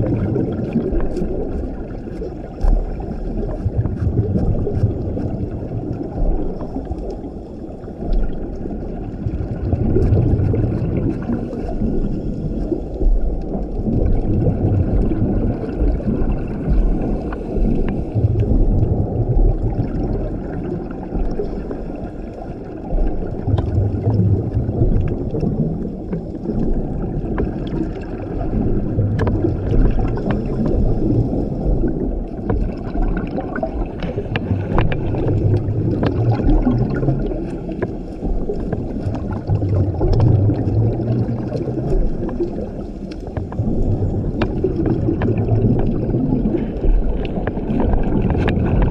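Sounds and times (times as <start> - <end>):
rumble of exhaled bubbles: 0.0 - 48.9
faint clicks: 32.4 - 45.9.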